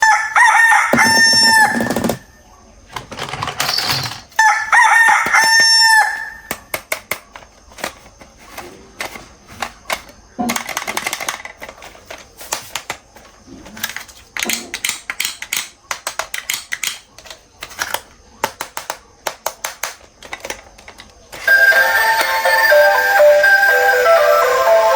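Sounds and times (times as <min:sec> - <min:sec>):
rooster crowing: 0:00.0 - 0:02.1, 0:04.4 - 0:06.4.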